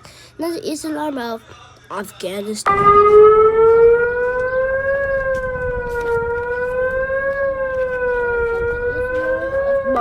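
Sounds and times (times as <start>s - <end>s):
rising and falling siren tone: 2.7s - 10.0s.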